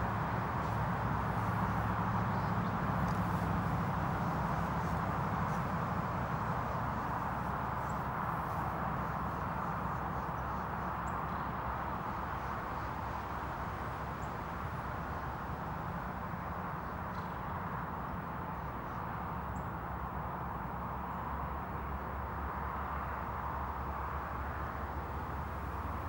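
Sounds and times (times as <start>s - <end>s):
outdoor background noise: 0.0s - 26.0s.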